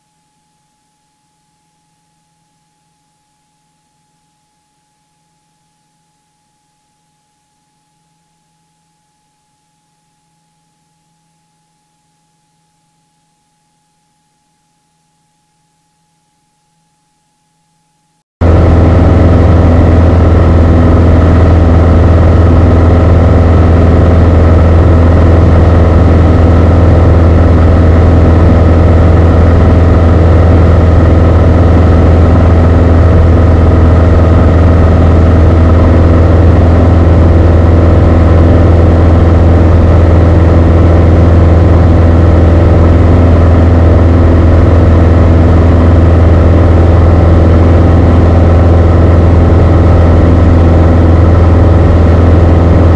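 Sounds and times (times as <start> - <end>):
airplane engine and propeller drone: 18.4 - 52.9.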